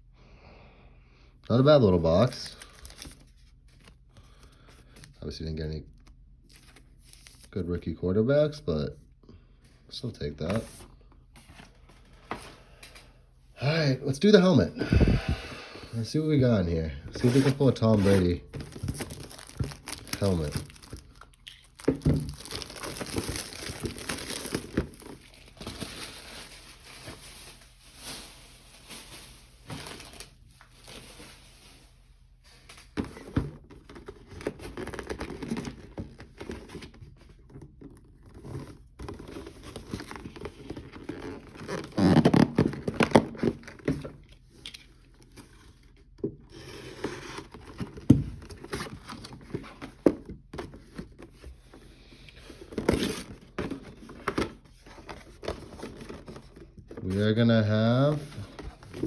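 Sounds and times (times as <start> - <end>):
wrapping crinkling and tearing: 2.0 - 5.2, 17.1 - 32.1, 38.0 - 45.6.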